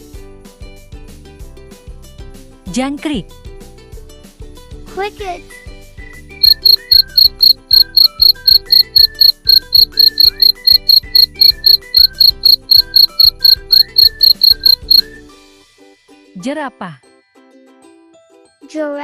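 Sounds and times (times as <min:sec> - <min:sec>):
cricket chirping: 0:06.4 - 0:15.0.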